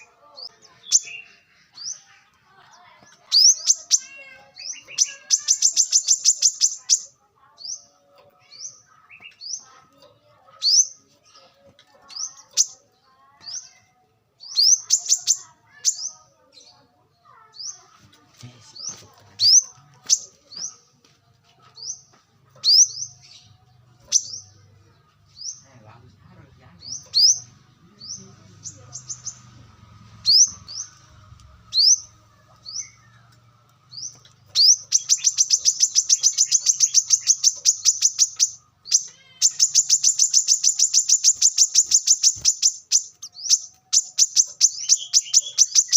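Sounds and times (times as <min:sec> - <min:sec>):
sunbird chirping: 0:02.7 - 0:07.9, 0:14.4 - 0:16.2, 0:31.7 - 0:45.9
bird trill: 0:02.8 - 0:09.8, 0:12.0 - 0:16.7, 0:18.8 - 0:20.8, 0:22.6 - 0:24.5, 0:26.8 - 0:29.5, 0:30.2 - 0:31.1, 0:31.7 - 0:45.9.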